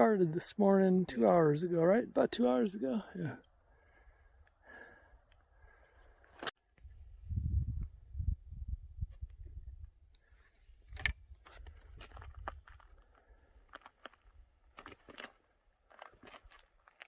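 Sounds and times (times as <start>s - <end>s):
wind rumble on microphone: 6.8s - 10.1s
footsteps on gravel: 11.4s - 17.0s.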